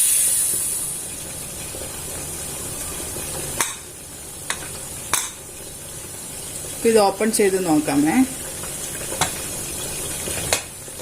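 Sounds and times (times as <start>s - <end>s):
pressure cooker hissing steam: 0.0s - 1.1s.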